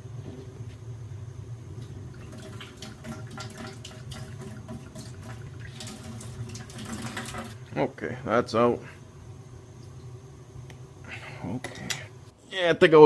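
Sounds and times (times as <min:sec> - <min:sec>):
steady low hum: 0:00.0 - 0:13.0
water dripping and trickling: 0:02.1 - 0:07.6.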